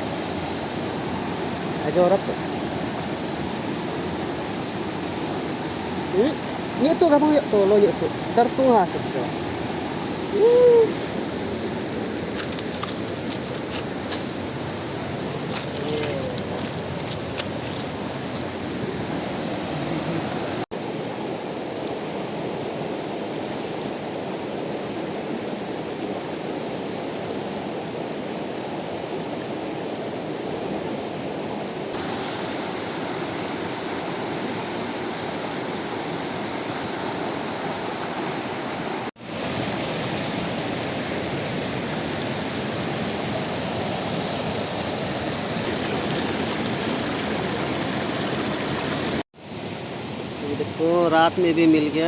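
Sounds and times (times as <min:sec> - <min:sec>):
river water rushing: 0:00.0 - 0:30.4, 0:31.9 - 0:52.0.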